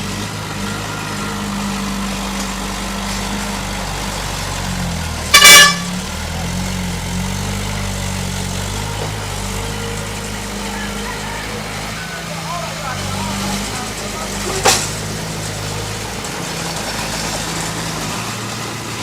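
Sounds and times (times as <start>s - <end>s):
heavy vehicle engine running: 0.0s - 19.0s
high-pitched horn toot: 5.3s - 6.2s.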